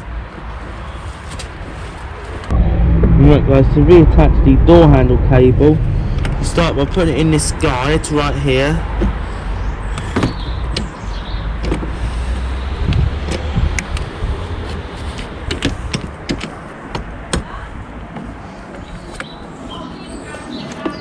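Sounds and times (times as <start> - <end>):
low rumble: 2.5 - 11.5.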